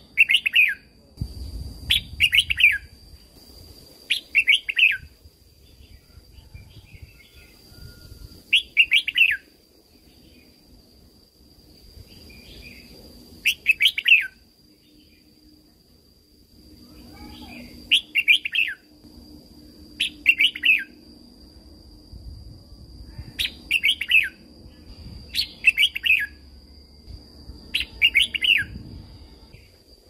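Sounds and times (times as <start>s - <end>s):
faint high whine: 0.0s - 30.0s
bird singing whistled phrases: 6.6s - 9.5s, 13.5s - 14.4s, 17.1s - 18.8s, 27.8s - 28.8s.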